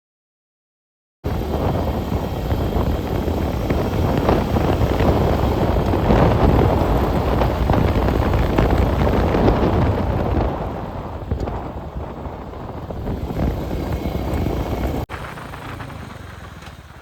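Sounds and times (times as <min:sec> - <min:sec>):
motorcycle engine cruising: 0:01.3 - 0:17.0
wind buffeting microphone: 0:01.3 - 0:17.0.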